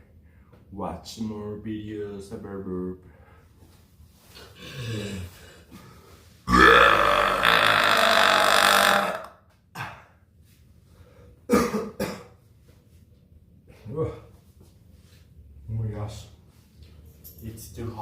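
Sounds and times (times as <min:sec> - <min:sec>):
man burping: 0:06.5 - 0:10.1.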